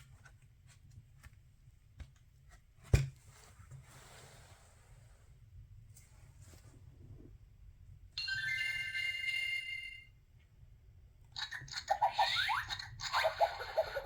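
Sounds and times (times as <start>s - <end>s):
busy jingle music: 8.2s - 10.1s
electronic chime chord: 8.2s - 10.1s.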